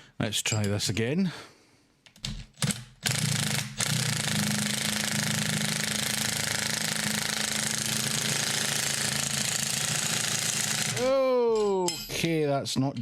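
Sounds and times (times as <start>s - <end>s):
impact wrench hammering: 2.3s - 12.2s.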